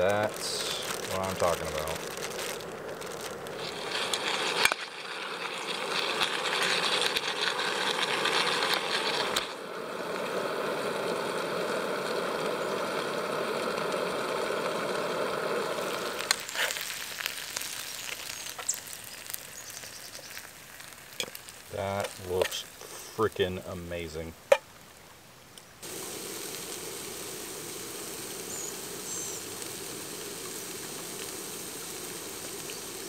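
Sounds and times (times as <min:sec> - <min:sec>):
food sizzling in a hot pan: 0:00.0 - 0:24.3, 0:25.8 - 0:33.0.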